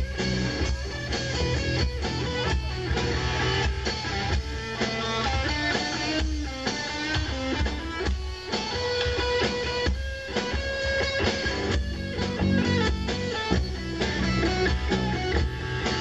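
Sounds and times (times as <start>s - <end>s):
bass: 0.0s - 16.0s
strummed guitar: 0.0s - 16.0s.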